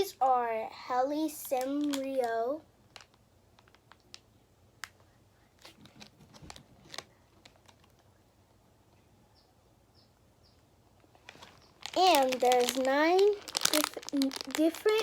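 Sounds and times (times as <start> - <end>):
toy packages being handled: 1.2 - 5.0, 5.6 - 8.1, 11.1 - 15.0.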